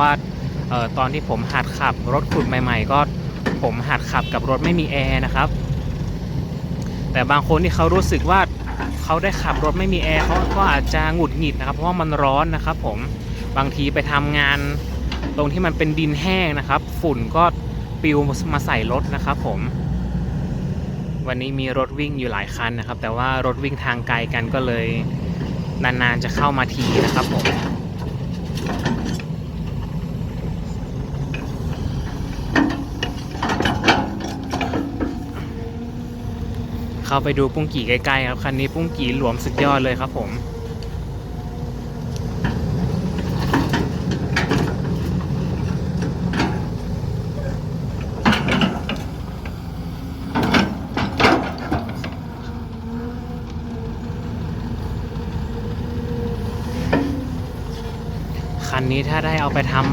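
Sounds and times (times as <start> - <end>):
excavator diesel engine running: 0.0 - 59.9
short metal clanks: 26.4 - 29.8, 31.2 - 35.6, 42.3 - 49.6, 50.3 - 52.2
sharp metallic clanks: 31.2 - 35.6.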